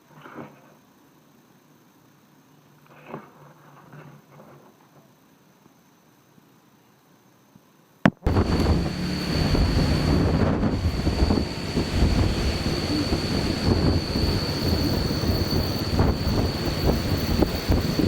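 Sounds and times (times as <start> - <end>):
high-pitched whine: 8.3 - 18.0
wind buffeting the microphone: 8.3 - 18.0.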